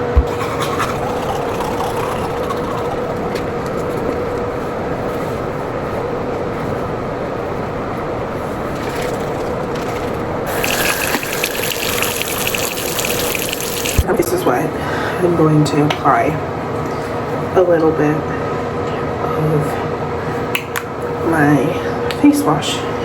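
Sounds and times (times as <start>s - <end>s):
water running into sink: 10.5s - 14.1s.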